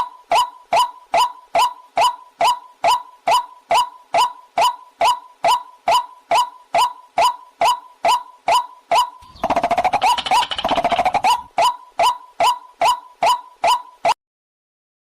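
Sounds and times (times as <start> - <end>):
waterhen calling: 9.2 - 11.8.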